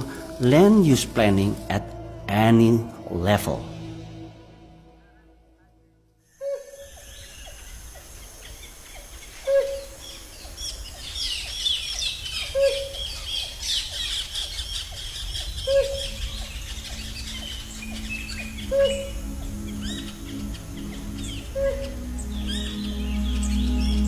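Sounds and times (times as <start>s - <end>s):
high bird chirps and whistles: 9.3s - 24.0s.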